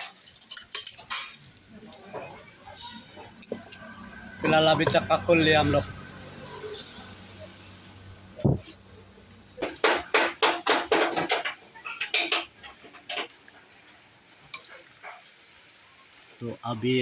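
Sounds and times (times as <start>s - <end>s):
metal tools clinking on metal: 0.0s - 1.6s, 2.7s - 5.4s, 10.4s - 13.4s.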